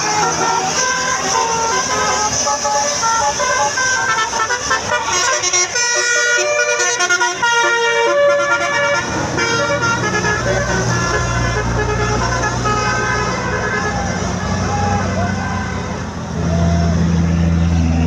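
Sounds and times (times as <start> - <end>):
low engine rumble: 0.0 - 18.0
multi-tone musical bus horn: 0.0 - 18.0.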